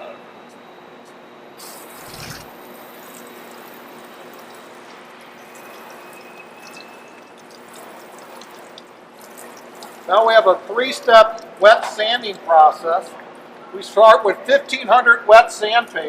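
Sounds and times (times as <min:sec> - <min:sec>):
hose spraying water: 0:01.6 - 0:10.6.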